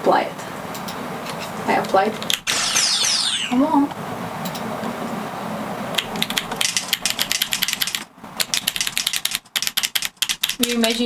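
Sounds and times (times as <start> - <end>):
rapid typing on keyboard: 6.0 - 11.0
simulated typewriter clacks: 6.0 - 11.0.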